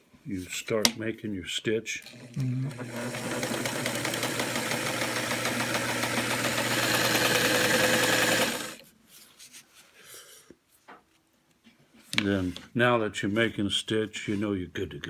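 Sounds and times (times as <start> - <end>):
sewing machine stitching: 2.0 - 8.8.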